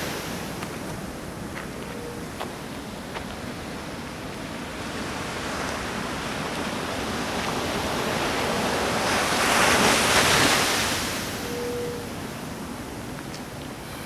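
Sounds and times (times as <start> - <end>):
ocean wave breaking on shore: 4.3 - 11.9.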